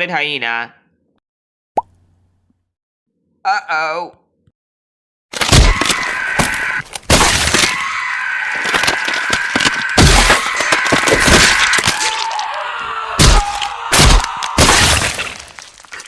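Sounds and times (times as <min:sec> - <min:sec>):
crashing and smashing effects: 0:05.4 - 0:12.5, 0:13.2 - 0:16.0.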